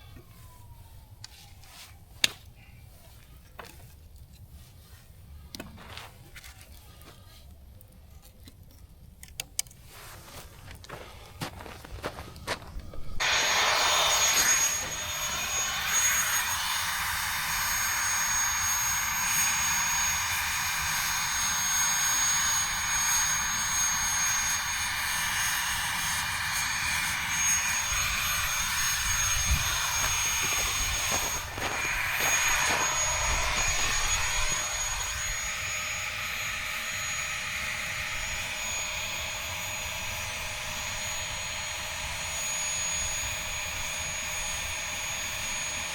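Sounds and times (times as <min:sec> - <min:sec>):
thin high-pitched whine: 0:13.0 - 0:45.8
jet-like rushing hiss: 0:13.2 - 0:36.5.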